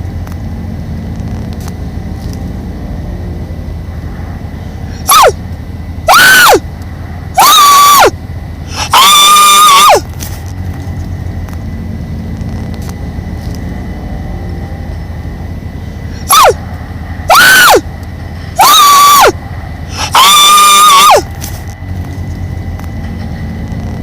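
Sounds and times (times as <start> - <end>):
steady low hum: 0.0 - 24.0
animal high-pitched calls: 5.1 - 5.4, 6.1 - 6.6, 7.4 - 8.1, 8.7 - 10.1, 16.3 - 16.6, 17.3 - 17.8, 18.6 - 21.3.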